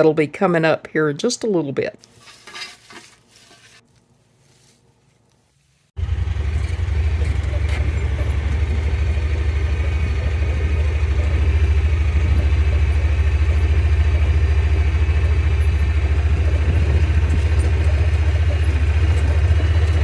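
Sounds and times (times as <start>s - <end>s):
vehicle engine rumbling: 6.0s - 20.0s.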